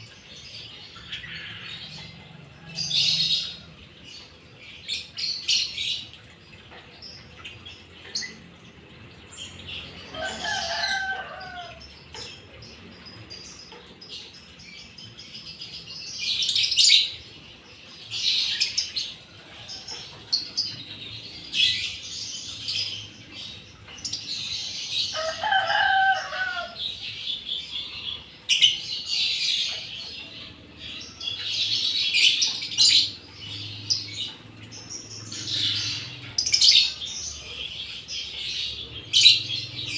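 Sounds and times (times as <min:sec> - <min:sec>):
rooster crowing: 0:10.1 - 0:11.8, 0:25.1 - 0:26.8.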